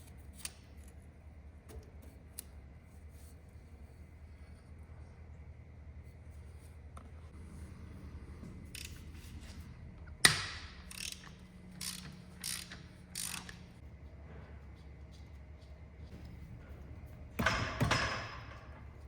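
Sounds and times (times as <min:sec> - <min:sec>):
ratchet wrench strokes: 0:10.8 - 0:13.6.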